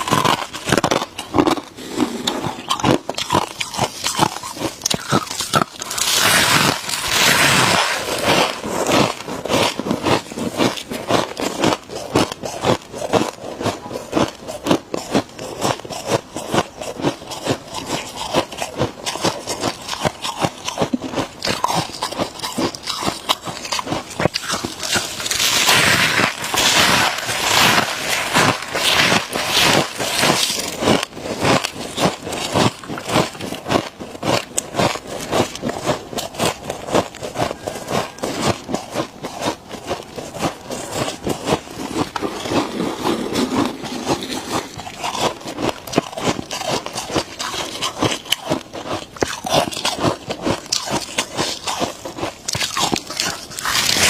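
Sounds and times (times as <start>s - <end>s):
crunching frost in mouth: 0.0s - 54.0s.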